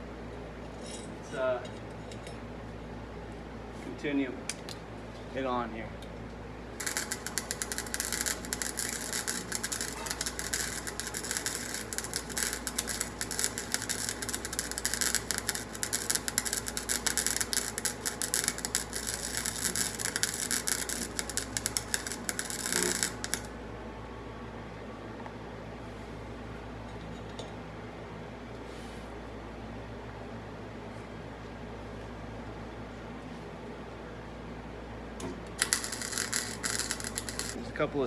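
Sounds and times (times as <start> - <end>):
low steady hum: 0.0 - 38.0
welding arc crackling: 6.8 - 23.6, 35.2 - 37.6.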